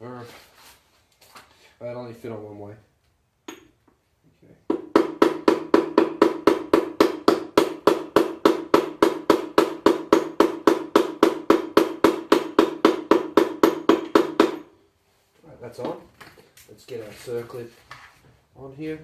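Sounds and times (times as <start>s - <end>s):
hammer striking metal pipe: 4.7s - 14.7s.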